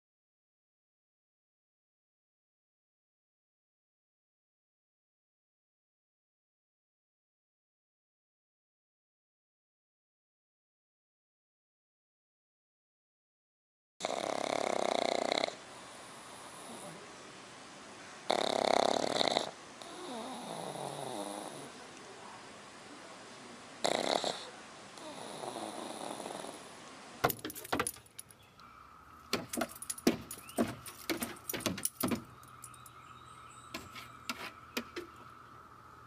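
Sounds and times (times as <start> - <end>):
dog snoring: 14.0 - 17.1, 18.3 - 21.8, 23.8 - 26.7.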